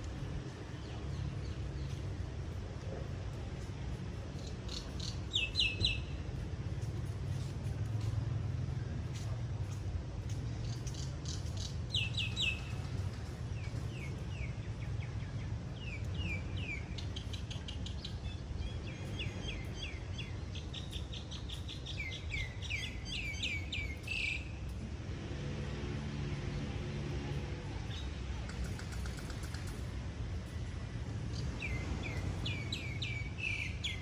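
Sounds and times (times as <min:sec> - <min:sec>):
steady low rumble: 0:00.0 - 0:34.0
small birds chirping: 0:31.3 - 0:34.0.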